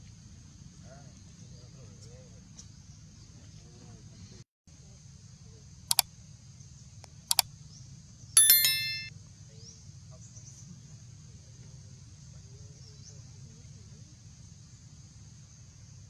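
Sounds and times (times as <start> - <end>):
quick double click: 8.4 - 9.1
sharp metallic clink: 8.4 - 9.1.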